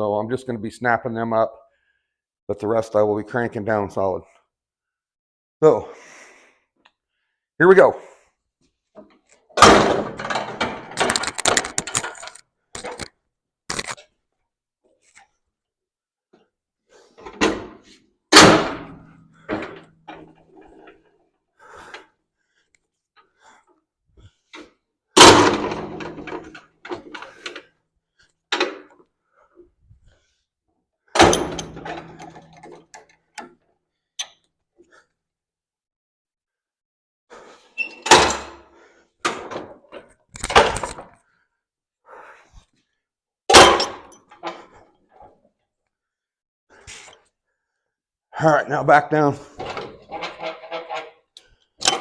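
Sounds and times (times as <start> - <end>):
heavy metal clanks and knocks: 9.6 - 13.0, 18.4 - 20.7, 25.2 - 27.2, 31.2 - 32.8, 43.5 - 44.7, 49.6 - 51.2
metal tool stands clunking: 31.2 - 33.0, 49.6 - 51.2.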